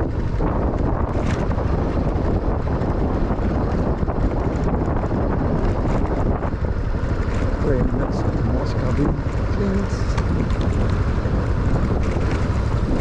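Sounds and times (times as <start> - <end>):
motorcycle going downhill: 0.0 - 13.0
wind buffeting microphone: 0.0 - 13.0.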